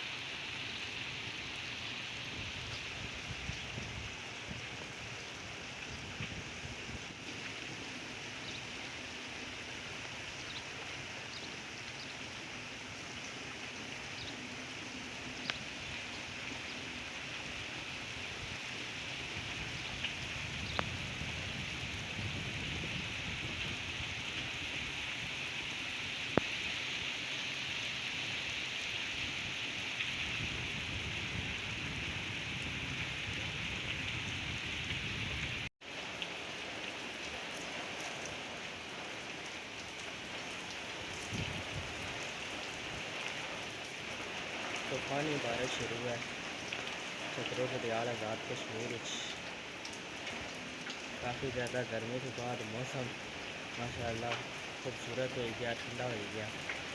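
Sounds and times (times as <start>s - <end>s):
heavy rain pouring: 0.0s - 56.9s
raindrops tapping: 19.2s - 21.4s, 35.4s - 56.9s.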